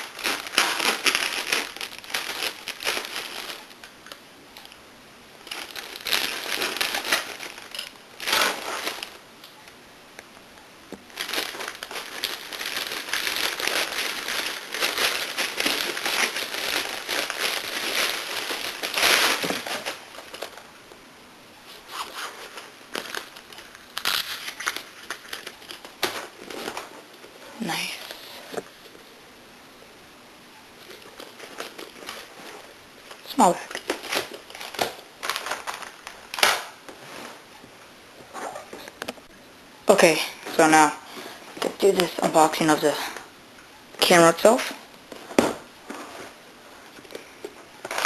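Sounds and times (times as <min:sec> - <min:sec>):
packaging bag crinkling and rustling: 0:00.0 - 0:04.8, 0:05.4 - 0:09.2, 0:10.9 - 0:20.7, 0:21.7 - 0:29.1, 0:30.8 - 0:37.4, 0:44.4 - 0:48.0.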